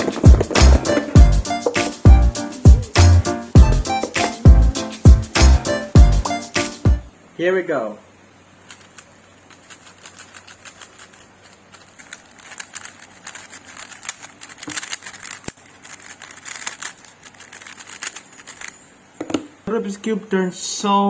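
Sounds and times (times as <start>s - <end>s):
speed cube clicking: 8.6s - 18.8s.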